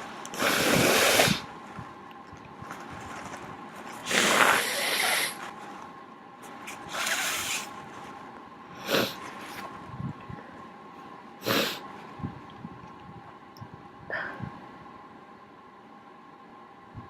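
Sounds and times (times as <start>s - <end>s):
person blowing their nose: 0.4s - 1.5s, 4.0s - 5.4s, 8.8s - 9.2s, 11.4s - 11.8s.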